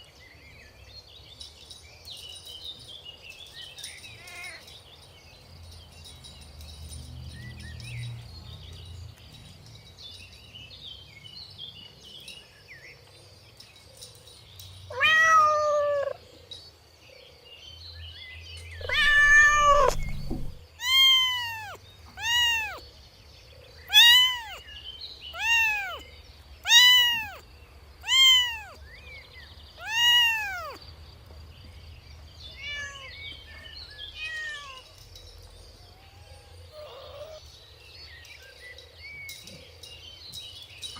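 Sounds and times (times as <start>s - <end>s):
kitten meowing: 14.9s - 16.2s, 18.8s - 22.8s, 23.9s - 24.6s, 25.3s - 26.0s, 26.7s - 27.4s, 28.0s - 28.8s, 29.8s - 30.8s, 36.0s - 37.4s.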